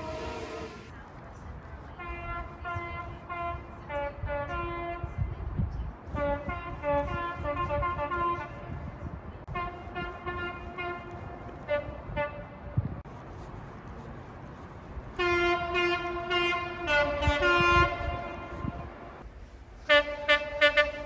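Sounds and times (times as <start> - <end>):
multi-chime train horn: 0.0 - 0.9
low rumble of train: 0.0 - 21.0.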